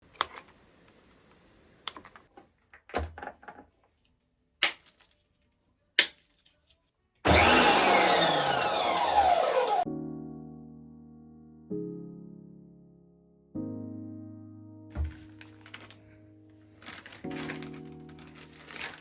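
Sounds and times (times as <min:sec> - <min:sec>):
machine whirring with falling whine: 0:07.3 - 0:09.8.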